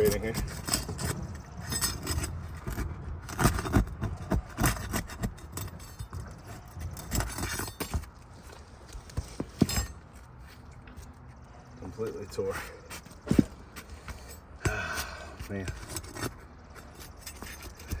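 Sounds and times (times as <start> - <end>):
tool scraping and prying shingles: 0.0 - 10.5, 12.6 - 18.0.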